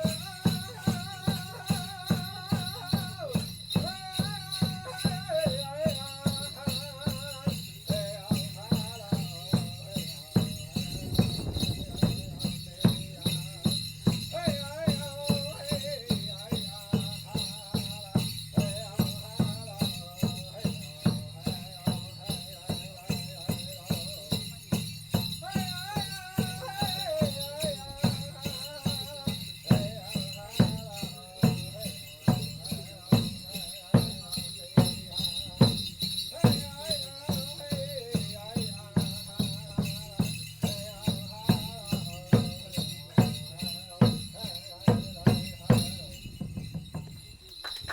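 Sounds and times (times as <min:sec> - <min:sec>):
man chant-like singing: 0:00.0 - 0:46.6
drum beaten steadily: 0:00.0 - 0:47.9
metal jingles shimmering: 0:00.0 - 0:47.9.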